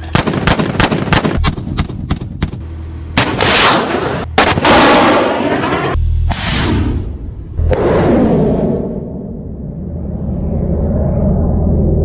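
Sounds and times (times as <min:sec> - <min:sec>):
gunshots: 0:00.0 - 0:02.6, 0:03.2 - 0:06.8.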